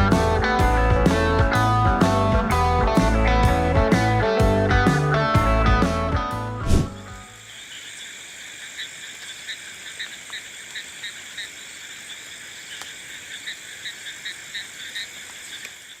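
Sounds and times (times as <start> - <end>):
frogs croaking: 7.2 - 16.0
high-pitched frog chorus: 7.4 - 16.0.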